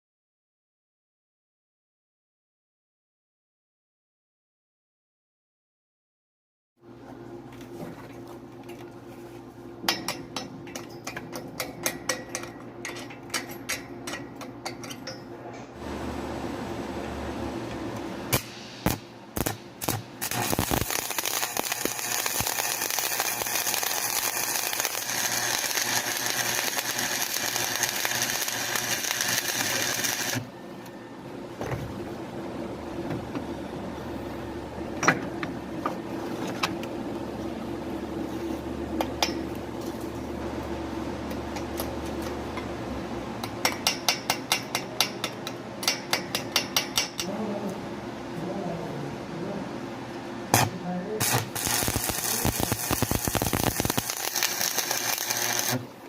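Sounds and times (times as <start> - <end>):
welding arc crackling and hissing: 18.3 - 30.5, 50.5 - 55.9.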